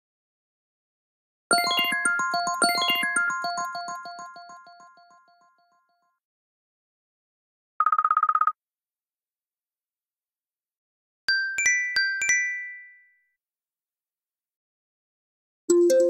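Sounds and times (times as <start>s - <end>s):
bell-like phone chime: 1.5s - 6.0s, 11.3s - 13.4s.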